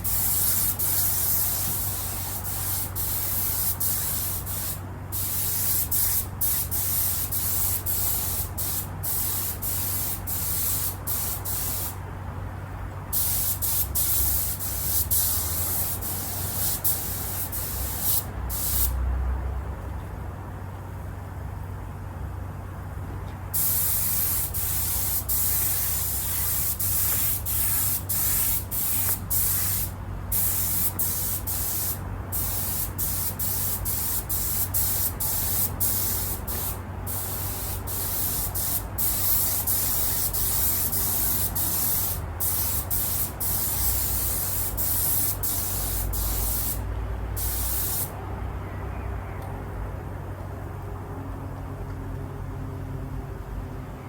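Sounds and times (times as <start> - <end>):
spray paint hissing: 0.0 - 12.0, 13.1 - 19.0, 23.6 - 46.8, 47.4 - 48.1
steady low hum: 19.6 - 50.8.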